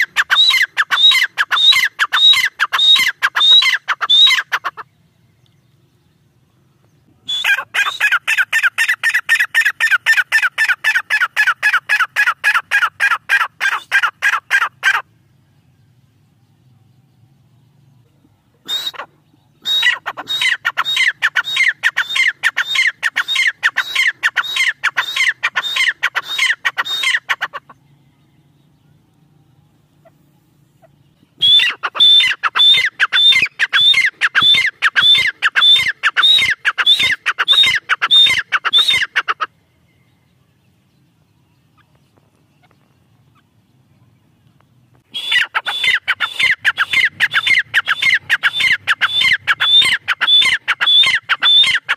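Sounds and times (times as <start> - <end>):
partridge calling harsh notes: 0.0 - 4.9, 7.3 - 15.1, 18.6 - 27.8, 30.8 - 39.6, 45.0 - 51.9.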